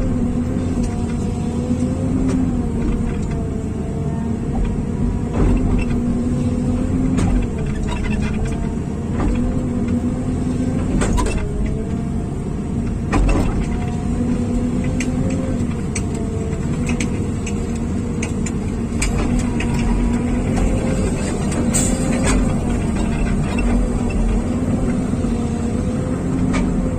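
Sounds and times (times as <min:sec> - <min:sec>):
diesel engine running: 0:00.0 - 0:26.9
sharp knocks and clicks: 0:04.6 - 0:06.2, 0:12.9 - 0:14.1, 0:14.7 - 0:25.1.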